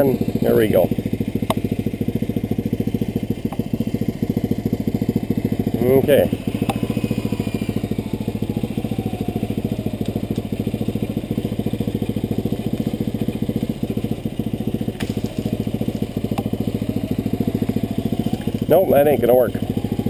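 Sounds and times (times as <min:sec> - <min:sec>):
engine idling with thumping beat: 0:00.0 - 0:20.0
sharp clicks: 0:06.6 - 0:06.8.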